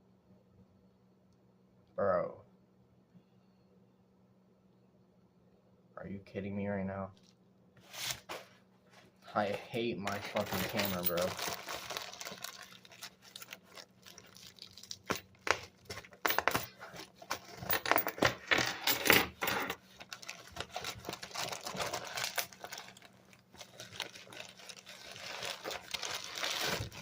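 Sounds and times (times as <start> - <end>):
packaging rustling: 7.9 - 18.2, 19.7 - 27.0
packaging tearing: 11.0 - 15.8, 19.8 - 27.0.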